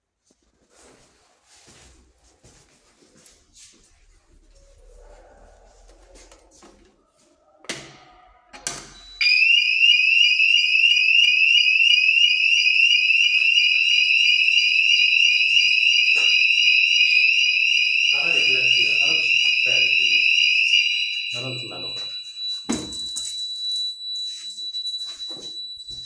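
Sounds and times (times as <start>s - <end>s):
fire alarm warble: 3.9s - 26.0s
steady high tone: 9.0s - 25.2s.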